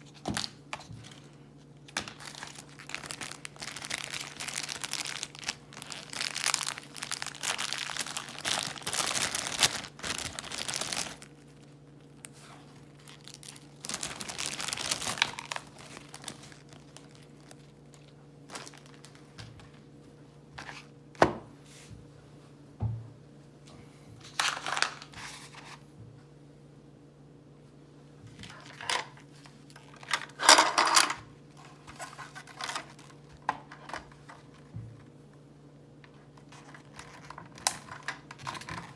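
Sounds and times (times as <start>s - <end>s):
packaging tearing and rustling: 0.0s - 19.4s, 24.3s - 25.8s, 28.4s - 34.6s, 36.5s - 38.9s
faint steady hum: 0.0s - 38.9s
plastic pieces clicking: 30.1s - 31.2s.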